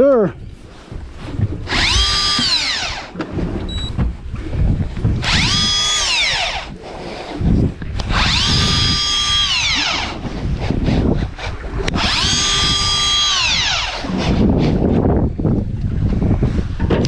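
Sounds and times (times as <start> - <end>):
electric fishing reel motor whine: 1.7 - 3.2, 5.2 - 6.8, 8.2 - 10.2, 12.0 - 14.0.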